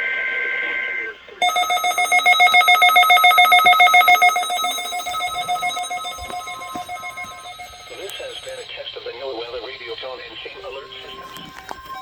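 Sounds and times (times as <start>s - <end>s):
rapid pulsing electronic beep: 1.4s - 8.6s.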